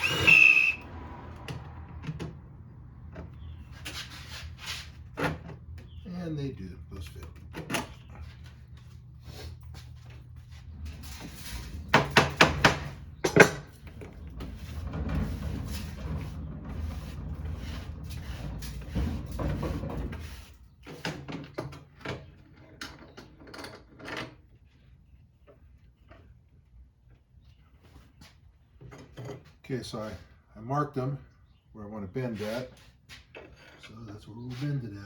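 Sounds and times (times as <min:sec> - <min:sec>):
rubbing and scraping: 0:03.1 - 0:06.0, 0:07.8 - 0:21.3.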